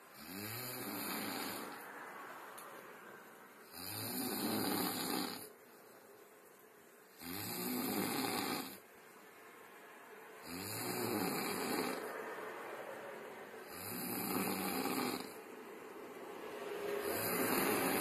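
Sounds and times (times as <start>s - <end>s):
person snoring: 0.1s - 1.8s, 3.6s - 5.5s, 7.1s - 8.8s, 10.4s - 12.1s, 13.6s - 15.4s, 17.0s - 18.0s.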